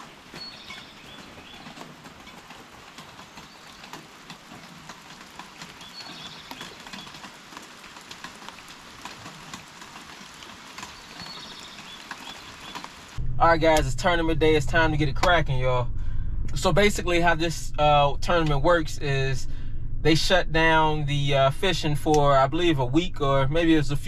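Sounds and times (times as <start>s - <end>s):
rushing stream water: 0.0s - 13.2s.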